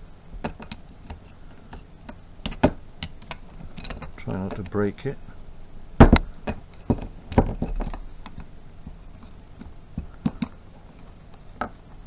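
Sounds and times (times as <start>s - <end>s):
tap parts clicking and clinking: 0.4s - 4.8s, 6.0s - 8.5s, 9.2s - 11.8s.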